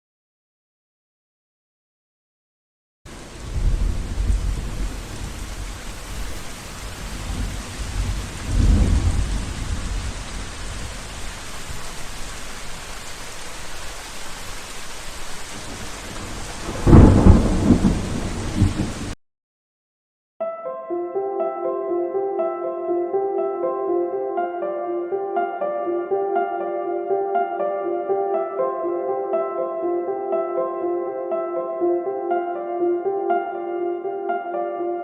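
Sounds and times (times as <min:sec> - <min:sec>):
steady rain: 0:03.1 - 0:19.2
thunder rumbling: 0:03.2 - 0:12.4, 0:15.5 - 0:19.2.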